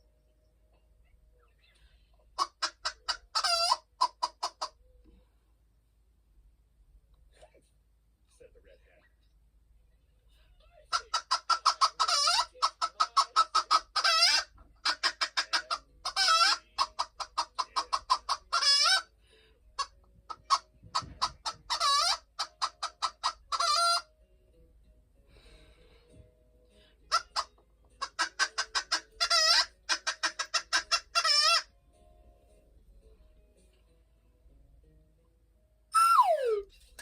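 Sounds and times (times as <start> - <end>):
hen clucking and squawking: 2.4 - 4.8, 10.9 - 19.1, 19.8 - 24.1, 27.1 - 31.7, 36.0 - 36.7.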